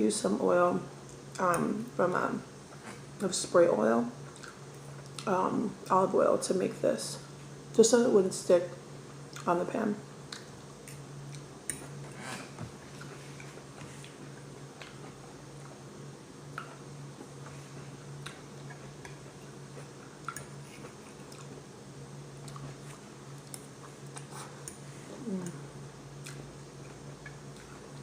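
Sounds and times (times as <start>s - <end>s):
steady low hum: 0.0s - 28.0s
chewing and mouth sounds: 4.2s - 5.3s, 9.3s - 9.5s, 10.2s - 15.8s, 16.5s - 21.6s, 22.4s - 28.0s.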